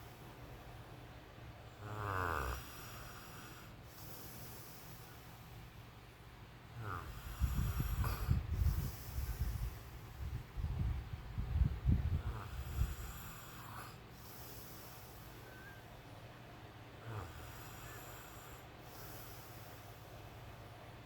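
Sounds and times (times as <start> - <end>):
man snoring: 1.8 - 4.8, 6.8 - 9.6, 12.2 - 15.3, 17.0 - 19.6
breathing: 2.7 - 5.8, 7.3 - 10.4, 12.5 - 15.9, 17.3 - 20.7.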